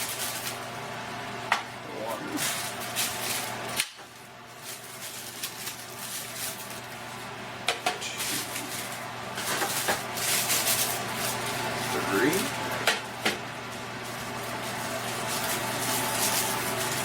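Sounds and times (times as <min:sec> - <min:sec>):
packaging rustling: 0:00.0 - 0:00.7, 0:02.4 - 0:07.4, 0:08.0 - 0:12.6, 0:13.7 - 0:17.0.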